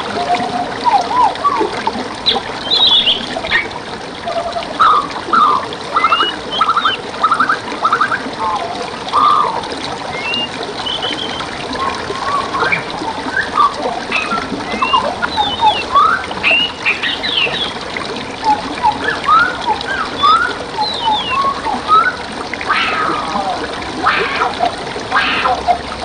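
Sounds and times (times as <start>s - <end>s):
stream water flowing: 0.0s - 26.0s
birds chirping and trilling: 2.2s - 3.7s, 4.4s - 25.6s.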